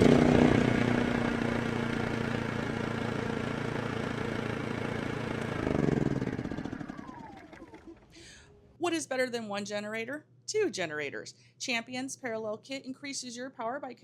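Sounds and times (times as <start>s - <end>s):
generator engine running: 0.0s - 8.6s.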